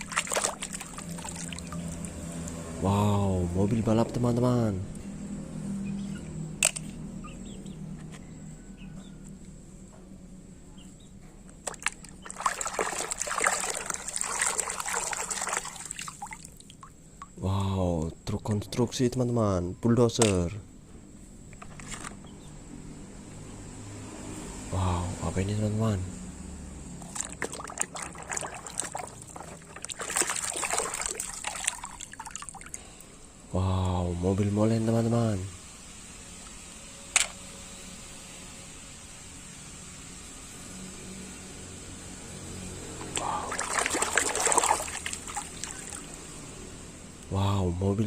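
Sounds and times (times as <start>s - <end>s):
water splashing and trickling: 0.0s - 2.8s, 11.6s - 17.4s, 26.9s - 33.0s, 42.9s - 46.6s.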